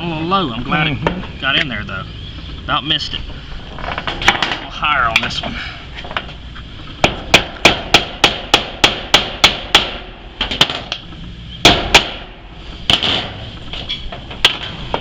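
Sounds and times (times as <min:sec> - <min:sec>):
hammer striking nail on tin roof: 0:07.0 - 0:11.0, 0:11.6 - 0:12.3, 0:12.9 - 0:13.4.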